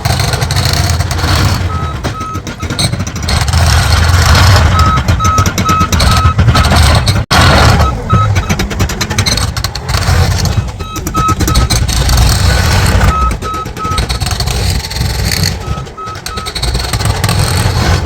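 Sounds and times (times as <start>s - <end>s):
diesel engine rumble: 0.0s - 18.0s
reversing alarm beeping: 0.3s - 18.0s.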